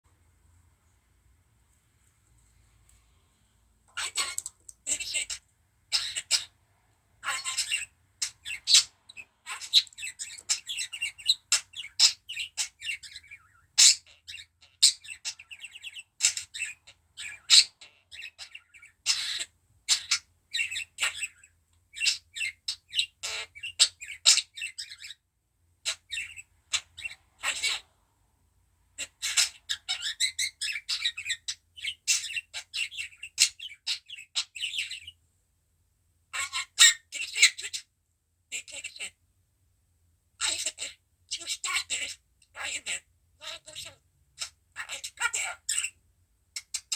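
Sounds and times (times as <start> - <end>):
budgerigar chirping and clicking: 3.9 - 6.5, 7.2 - 25.2, 25.9 - 27.8, 29.0 - 35.2, 46.6 - 46.9.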